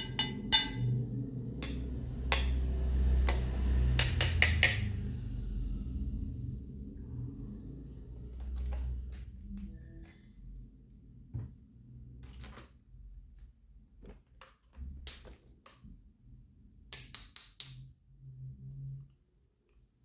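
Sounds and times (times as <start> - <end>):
sharp metallic clinks: 0.0 - 0.9
faint low hum: 0.0 - 14.1.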